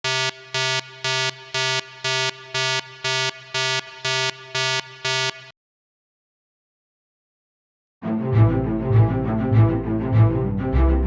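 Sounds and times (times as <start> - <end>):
buzzy electronic tone pulsing: 0.0 - 5.5.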